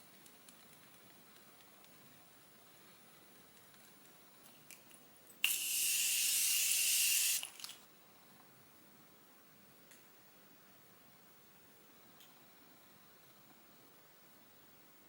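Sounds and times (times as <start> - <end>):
aerosol spray hiss: 5.4 - 7.7.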